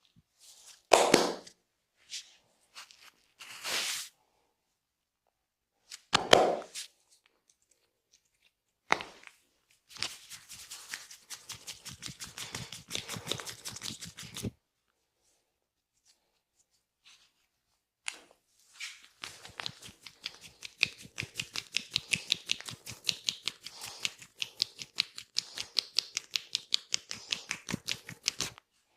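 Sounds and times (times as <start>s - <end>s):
hands rubbing and slapping skin: 8.9s - 14.6s, 18.1s - 28.6s
fast hand tapping: 10.5s - 14.5s, 19.5s - 28.6s.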